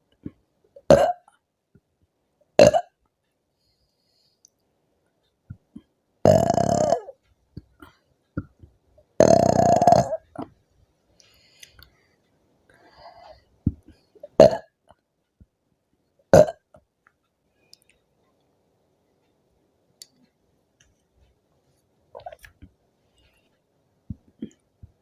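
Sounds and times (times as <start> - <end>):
woman burping: 0.8 - 1.3, 2.6 - 2.9, 6.2 - 7.2, 9.2 - 10.5, 14.2 - 14.7, 16.3 - 16.7.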